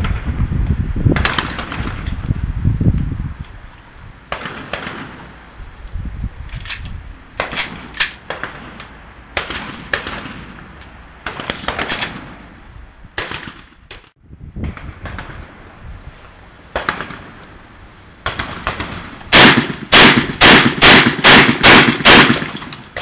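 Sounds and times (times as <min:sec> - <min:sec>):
shotgun shots echoing: 0:04.3 - 0:05.3, 0:13.2 - 0:13.7, 0:18.2 - 0:23.0.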